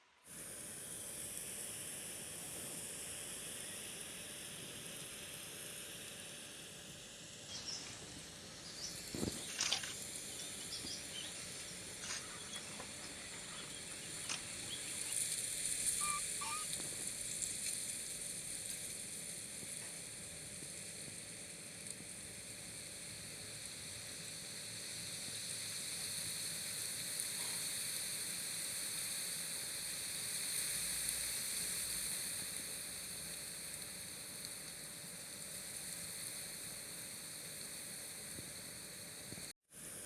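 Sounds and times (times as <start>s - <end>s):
steady hiss: 0.0s - 40.0s
faint chirps: 7.4s - 17.0s
sharp clicks: 12.0s - 15.4s.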